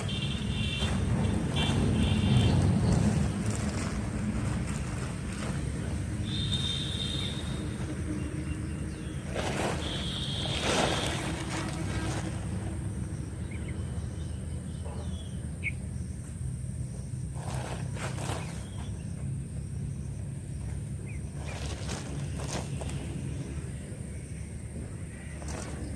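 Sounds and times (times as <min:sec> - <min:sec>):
high whistled calls: 0:06.2 - 0:07.7, 0:13.5 - 0:15.8.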